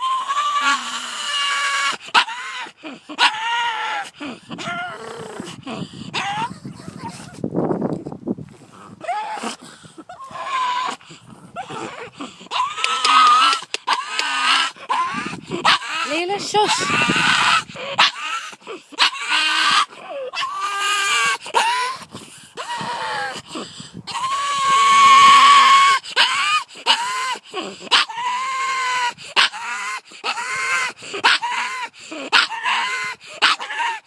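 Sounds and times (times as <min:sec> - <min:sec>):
dog barking high-pitched: 0:14.9 - 0:18.3, 0:32.3 - 0:34.0.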